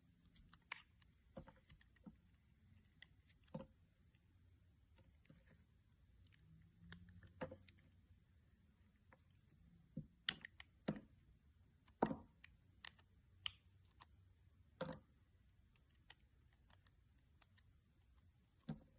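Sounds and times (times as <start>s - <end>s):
small objects clicking and tapping: 11.8s - 18.9s.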